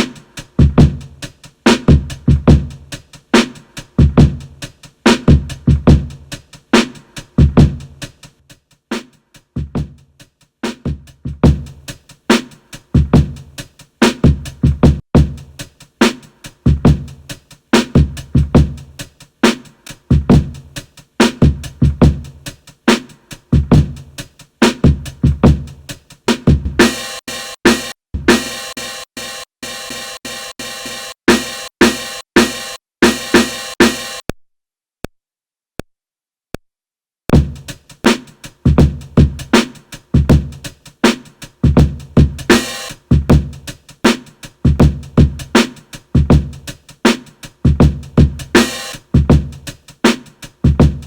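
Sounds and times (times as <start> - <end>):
boom bap drum pattern: 0.0 - 34.3, 37.3 - 51.0
deep kick drums: 37.3 - 37.7.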